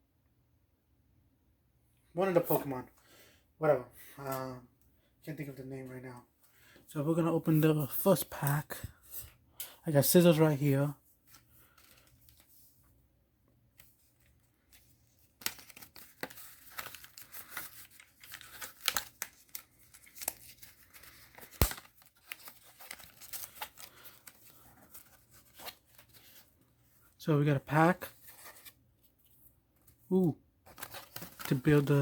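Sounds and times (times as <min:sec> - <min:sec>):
wrapper crinkling and tearing: 0:15.2 - 0:26.5, 0:30.7 - 0:32.0
scissors cutting wrapper: 0:15.4 - 0:24.5.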